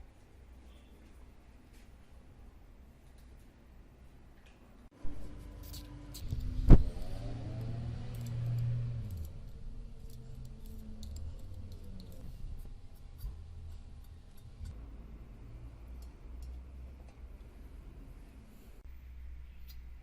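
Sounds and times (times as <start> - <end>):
small clicks: 5.6 - 12.7.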